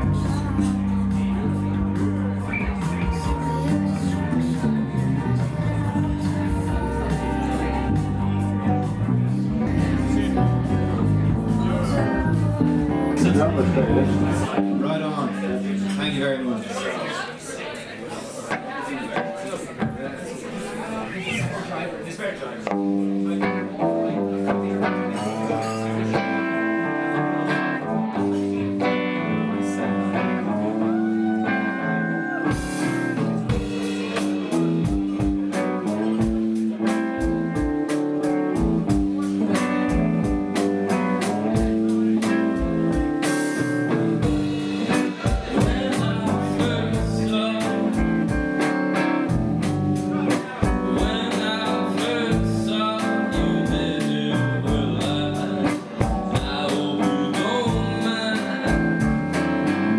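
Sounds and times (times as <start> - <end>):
drum kit beat: 0.0 - 14.5, 32.5 - 59.9
person singing: 0.0 - 14.8, 24.6 - 59.9
guitar: 0.0 - 59.9.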